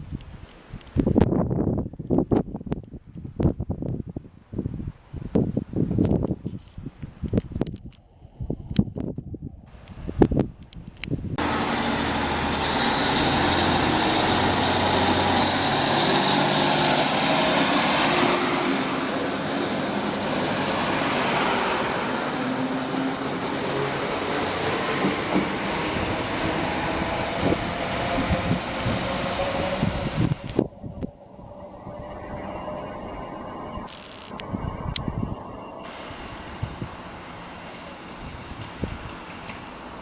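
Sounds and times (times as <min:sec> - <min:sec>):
train wheels on rail: 0:11.4 - 0:32.8, 0:35.8 - 0:40.0
diesel train engine: 0:11.4 - 0:40.0.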